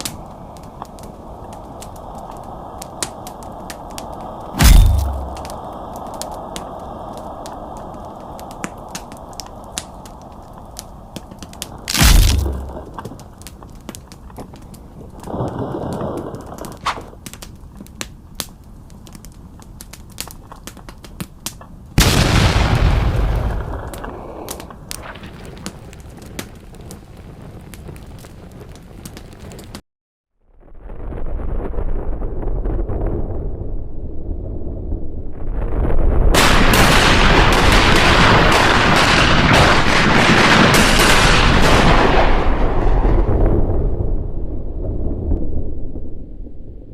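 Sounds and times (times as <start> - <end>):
crackle of sharp pops: 0.0 - 29.8, 36.3 - 43.4
volcanic eruption roar: 0.2 - 13.5
loud explosion boom: 4.6 - 5.6, 11.9 - 13.0, 22.0 - 24.0
sharp explosive blasts: 4.6 - 5.6, 11.8 - 13.0, 22.0 - 25.5, 36.3 - 43.6.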